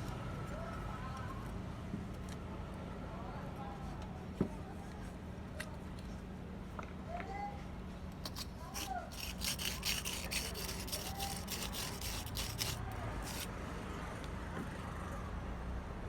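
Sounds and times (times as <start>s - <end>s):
hand scraping or filing strokes: 8.2s - 13.5s.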